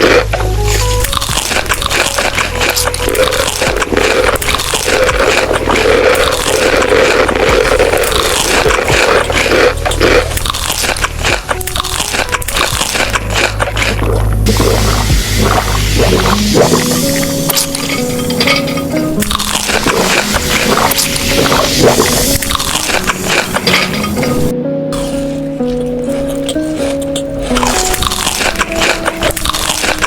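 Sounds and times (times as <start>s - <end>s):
chewing crunchy food: 0.0s - 30.0s.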